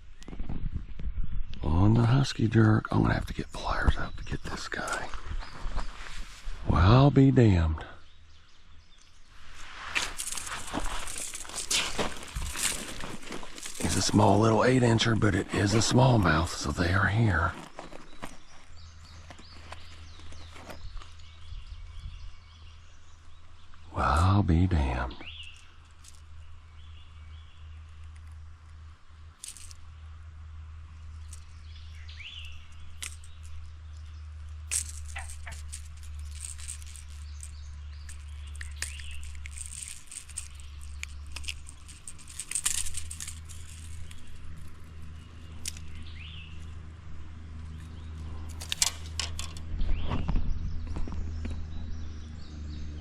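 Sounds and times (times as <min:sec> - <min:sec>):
bird chirps: 0:00.0 - 0:09.6, 0:10.4 - 0:28.4, 0:30.8 - 0:46.9, 0:49.3 - 0:53.0
gear rattling and clicking: 0:10.0 - 0:22.0, 0:29.4 - 0:29.9, 0:31.0 - 0:46.8, 0:47.6 - 0:50.3.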